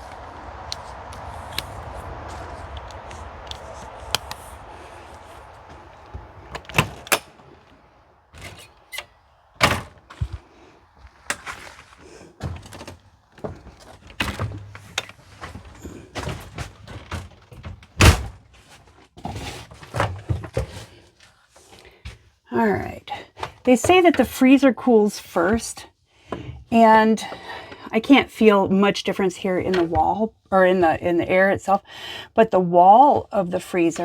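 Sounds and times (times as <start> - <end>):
doors thunking shut: 5.1 - 7.7, 8.3 - 10.4, 12.4 - 18.4.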